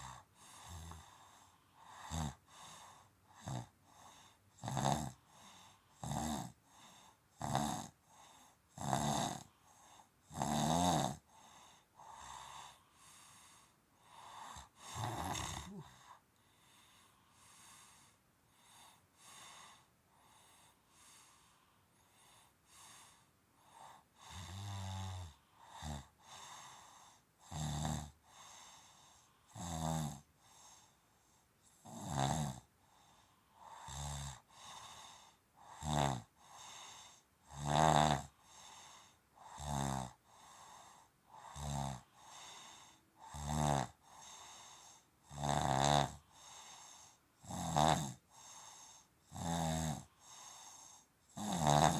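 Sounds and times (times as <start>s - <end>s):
soft breathing: 0.0s - 4.5s, 11.2s - 24.5s, 25.3s - 27.4s, 28.2s - 29.6s, 30.3s - 31.8s, 32.8s - 37.4s, 40.2s - 43.2s, 44.0s - 45.2s, 46.2s - 47.3s, 48.2s - 49.2s, 50.0s - 51.2s
person snoring: 4.6s - 6.6s, 7.4s - 8.0s, 8.8s - 9.5s, 10.3s - 11.2s, 14.3s - 16.2s, 27.5s - 28.1s, 31.8s - 32.7s, 35.7s - 36.3s, 37.5s - 38.3s, 39.5s - 40.2s, 41.4s - 44.0s, 45.3s - 46.2s, 47.4s - 51.9s.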